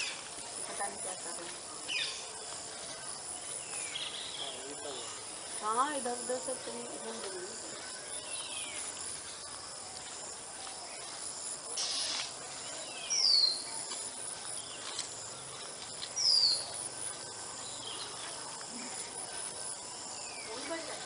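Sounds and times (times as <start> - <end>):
brief hiss: 11.8 - 12.4
insect trilling: 11.8 - 12.4.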